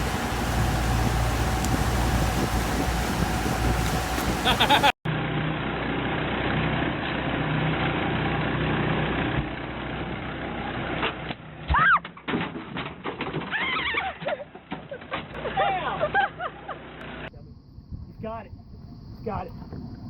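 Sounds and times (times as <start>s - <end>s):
engine idling: 0.0s - 4.9s.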